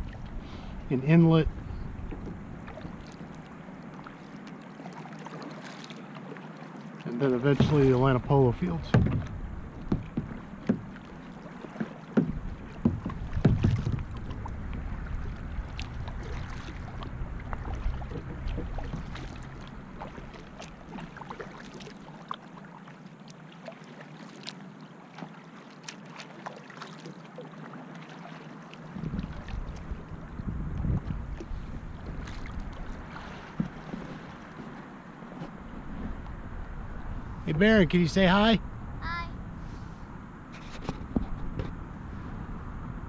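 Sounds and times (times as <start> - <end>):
wind rumble on microphone: 0.0 - 3.6, 7.6 - 11.0, 12.2 - 20.4, 28.9 - 43.0
water washing: 0.0 - 22.4
paddle splashing: 0.0 - 42.7
light knocks: 8.8 - 11.0.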